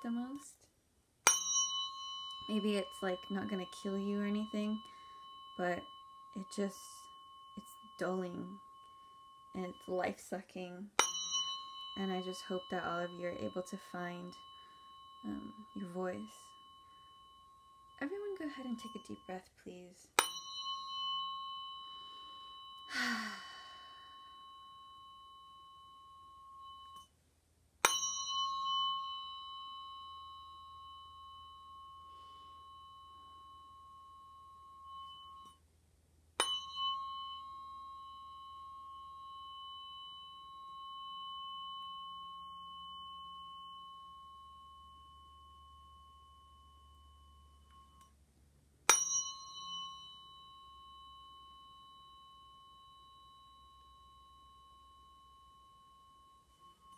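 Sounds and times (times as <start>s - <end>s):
tuning fork ringing: 1.2s - 56.9s
person exhaling: 22.9s - 24.1s.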